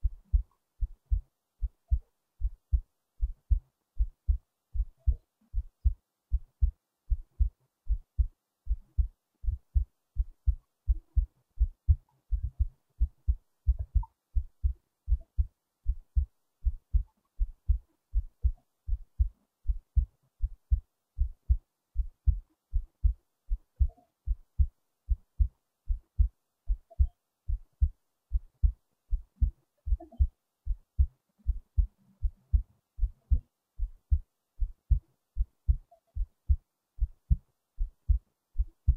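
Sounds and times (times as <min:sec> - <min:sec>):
heartbeat double thump: 0:00.0 - 0:38.9.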